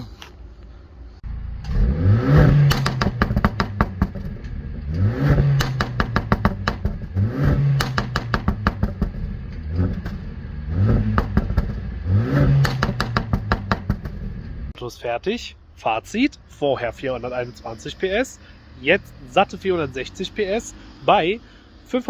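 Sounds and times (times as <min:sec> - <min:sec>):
car engine revving: 0:01.2 - 0:14.8, 0:16.8 - 0:22.0
exhaust pops and crackles: 0:01.6 - 0:14.8.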